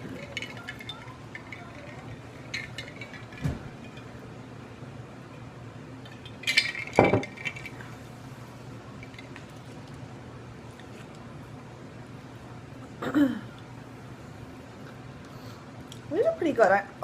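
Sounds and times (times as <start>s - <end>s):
glassy clink: 0.1s - 4.2s, 6.1s - 7.9s.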